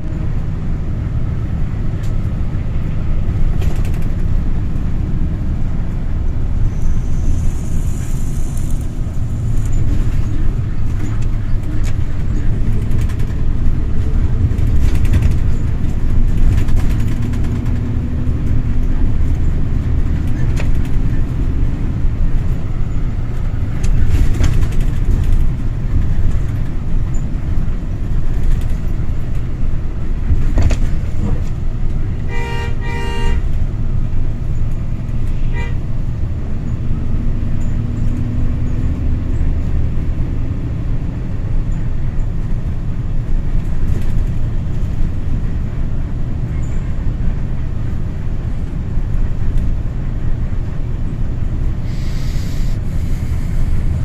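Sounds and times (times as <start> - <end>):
car engine and road rumble: 0.0 - 54.0
car horn toots: 32.3 - 33.4, 35.5 - 35.8.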